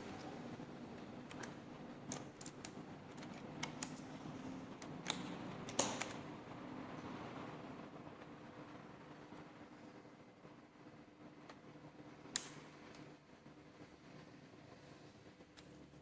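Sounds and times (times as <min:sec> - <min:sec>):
faint steady hum: 0:00.0 - 0:16.0
laptop parts clicking: 0:01.2 - 0:04.2, 0:04.8 - 0:06.2.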